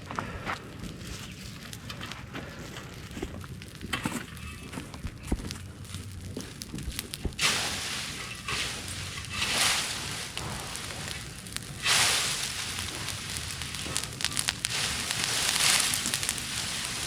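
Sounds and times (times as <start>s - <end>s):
bonfire crackling and popping: 0.0s - 17.0s
loud rushing hiss: 7.4s - 17.0s.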